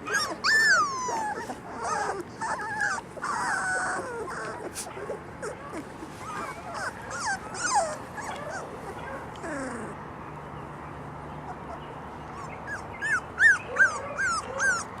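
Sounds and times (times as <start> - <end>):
puppies whimpering and yelping: 0.0 - 10.1, 11.4 - 15.0.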